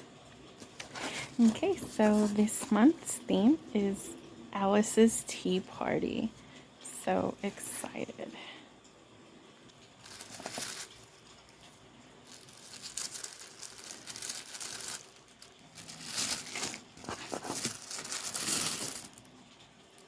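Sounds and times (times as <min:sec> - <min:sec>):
packaging crinkling and rustling: 0:00.6 - 0:02.7, 0:09.7 - 0:20.0.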